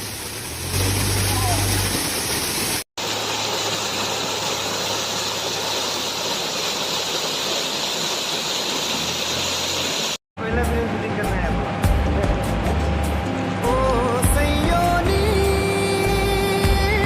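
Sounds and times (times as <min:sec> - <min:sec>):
waterfall roaring: 0:00.0 - 0:10.2.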